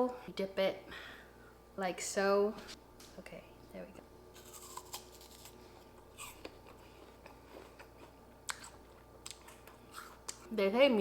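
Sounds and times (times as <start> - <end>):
chewing crisp apple: 4.4 - 10.5.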